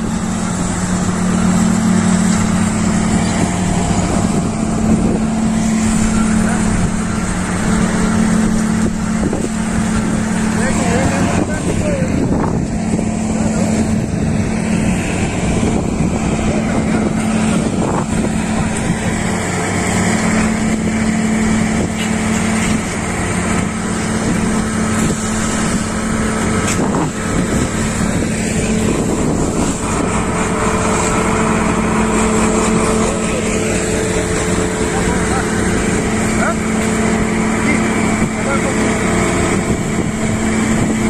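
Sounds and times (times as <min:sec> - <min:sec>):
tractor engine droning: 0:00.0 - 0:41.0.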